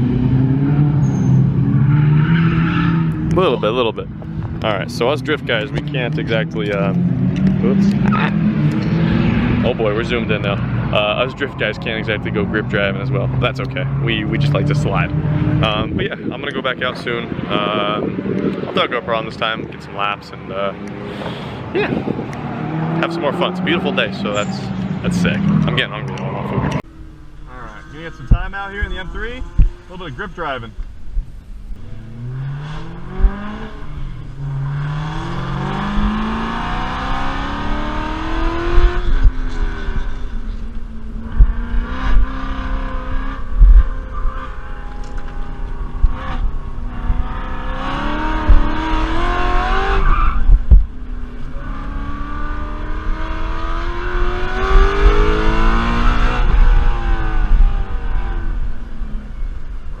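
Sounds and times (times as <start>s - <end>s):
car engine revving: 0.0s - 60.0s
sharp thumps: 26.8s - 29.9s, 30.7s - 58.4s.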